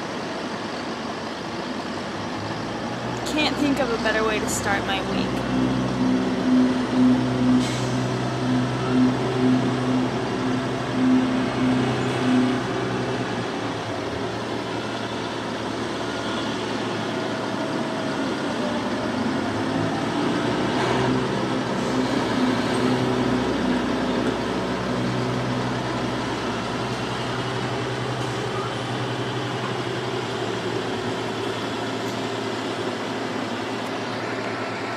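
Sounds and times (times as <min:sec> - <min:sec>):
construction machinery engine humming: 0:00.0 - 0:34.9
rushing grinding noise: 0:03.8 - 0:14.7.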